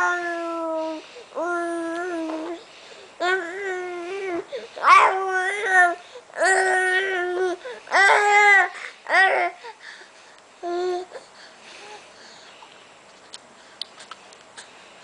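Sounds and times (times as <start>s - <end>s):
baby crying and cooing: 0.0s - 2.6s, 3.2s - 9.8s, 10.6s - 11.2s.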